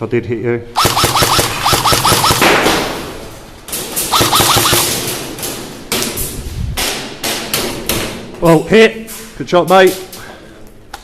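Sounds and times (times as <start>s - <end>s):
airsoft guns firing bursts: 0.8s - 2.8s, 4.1s - 5.1s.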